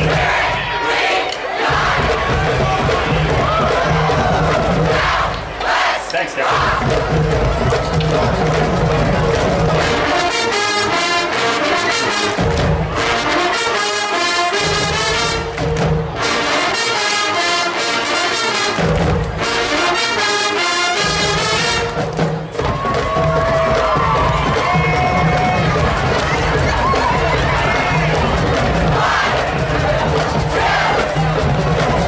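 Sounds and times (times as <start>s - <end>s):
heavy low drums: 0.0s - 0.9s, 1.6s - 13.6s, 14.5s - 16.5s, 21.0s - 32.0s
marching band brass: 0.0s - 32.0s.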